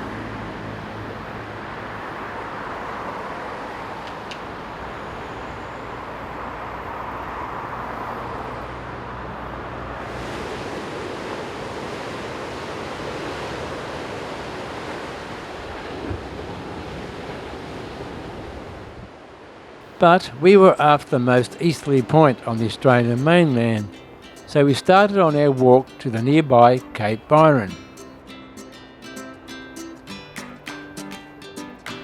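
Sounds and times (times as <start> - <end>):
surf breaking on beach: 9.8 - 27.8.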